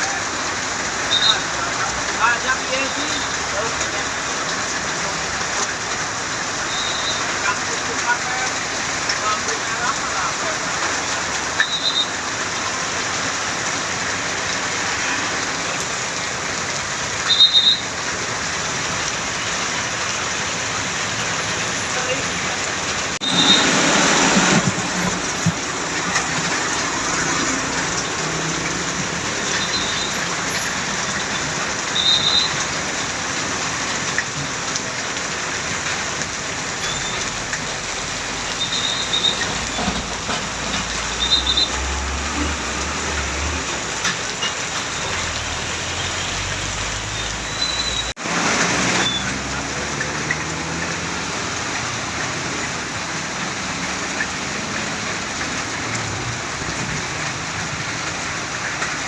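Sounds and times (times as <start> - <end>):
rain hissing: 0.0 - 59.0
heavy vehicle engine passing: 21.5 - 29.4.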